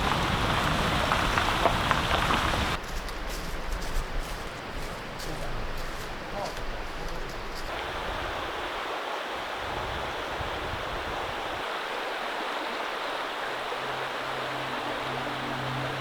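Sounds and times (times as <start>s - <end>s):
flowing water rushing: 0.0s - 2.8s, 7.7s - 16.0s.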